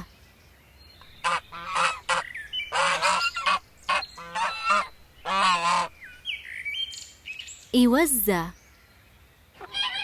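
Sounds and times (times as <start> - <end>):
goose honking: 1.2 - 5.9, 9.6 - 10.0.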